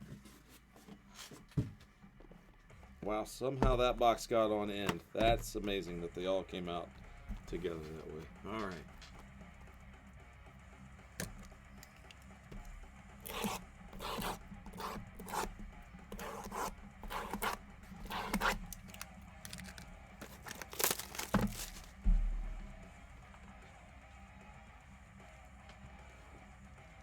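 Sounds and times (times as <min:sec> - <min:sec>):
plastic wrapping ripping and crinkling: 0:17.4 - 0:22.0
low thump: 0:21.9 - 0:22.8.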